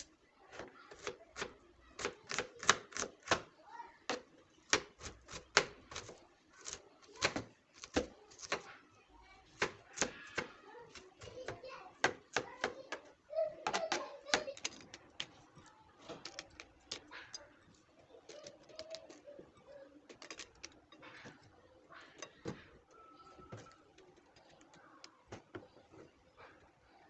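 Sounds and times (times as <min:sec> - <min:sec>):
faint clicks and taps: 0:10.9 - 0:27.0.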